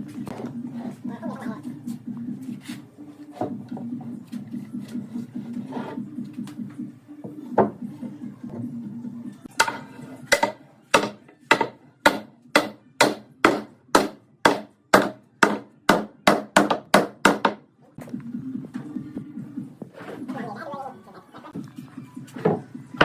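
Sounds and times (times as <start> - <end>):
hammer striking wood: 9.6 - 17.6.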